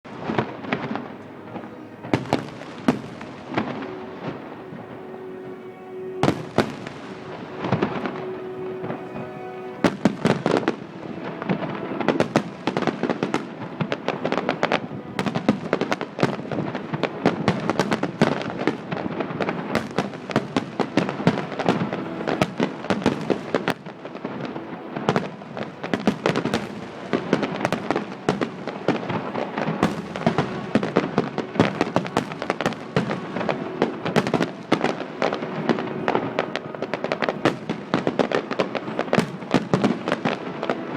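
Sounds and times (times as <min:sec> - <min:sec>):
fireworks bangs and crackling: 0:00.1 - 0:40.9.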